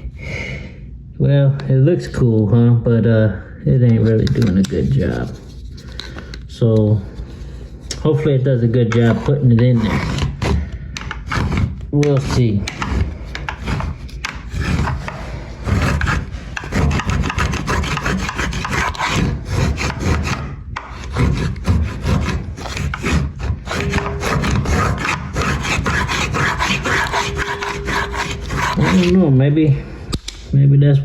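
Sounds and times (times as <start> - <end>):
scraper scratching off caulk: 7.0 - 29.3.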